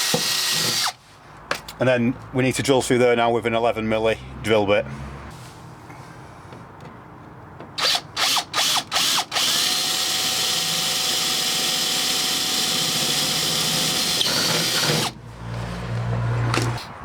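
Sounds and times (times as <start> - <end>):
power drill drilling: 0.0 - 1.0, 7.8 - 15.2.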